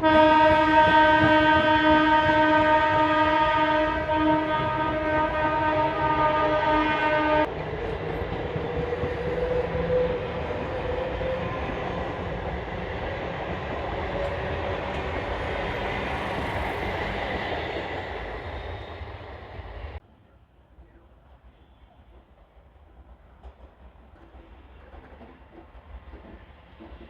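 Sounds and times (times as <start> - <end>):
train horn: 0.0 - 7.5
train rumbling past: 0.0 - 27.0.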